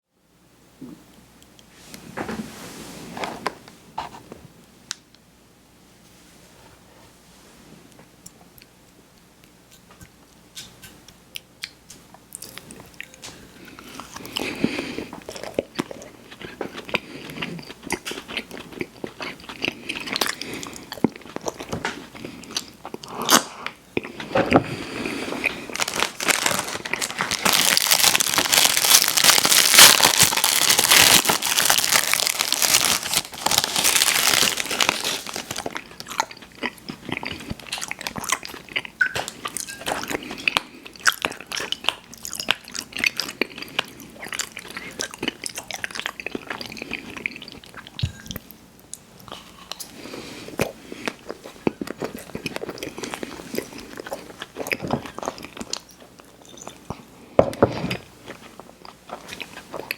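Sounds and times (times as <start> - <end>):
person chewing crunchy snacks: 11.6 - 48.5, 49.2 - 59.9.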